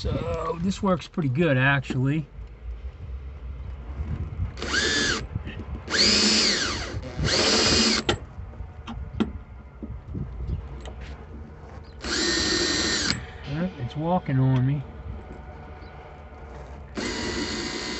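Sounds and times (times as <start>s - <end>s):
electric drill whining: 4.6s - 5.3s, 5.9s - 8.2s, 12.0s - 13.4s, 16.9s - 17.9s.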